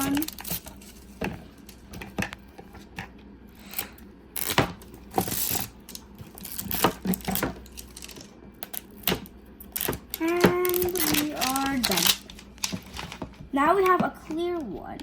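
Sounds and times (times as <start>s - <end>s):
packaging rustling or tearing: 9.8s - 13.3s.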